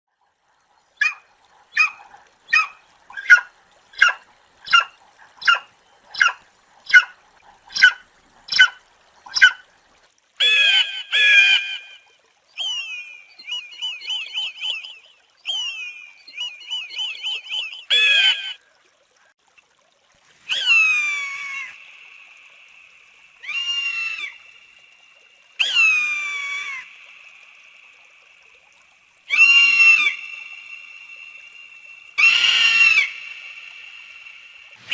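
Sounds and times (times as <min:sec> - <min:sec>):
eagle calling and screaming: 0:01.0 - 0:09.6, 0:10.4 - 0:12.0, 0:12.6 - 0:18.6, 0:20.5 - 0:22.0, 0:23.4 - 0:24.6, 0:25.6 - 0:27.0, 0:29.3 - 0:31.2, 0:32.2 - 0:34.0.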